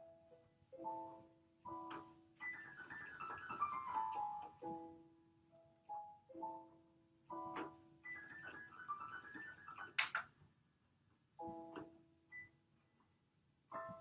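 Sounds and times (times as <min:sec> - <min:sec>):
solo piano improvisation: 0:05.9 - 0:10.1.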